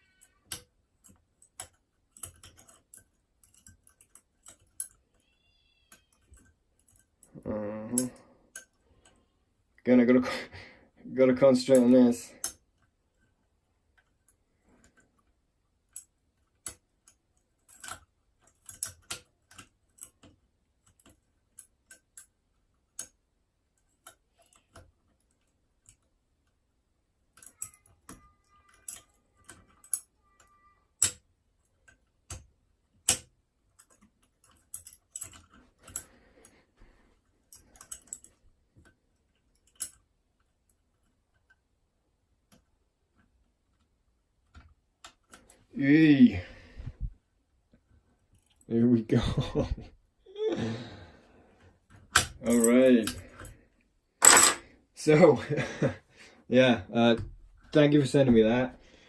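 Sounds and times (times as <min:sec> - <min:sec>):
metallic lock picking clicks: 0:00.1 - 0:05.3, 0:15.9 - 0:22.3, 0:27.4 - 0:31.2, 0:33.0 - 0:36.1, 0:37.5 - 0:38.3, 0:39.4 - 0:40.0
faint squeak: 0:05.1 - 0:06.3.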